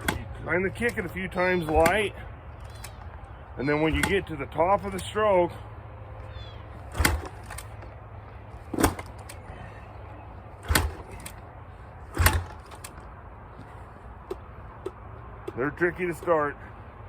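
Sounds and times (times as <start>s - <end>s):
motorcycle kick-start thumps: 0.0s - 3.2s, 3.8s - 5.2s, 6.8s - 9.6s, 10.6s - 11.5s, 12.1s - 15.6s.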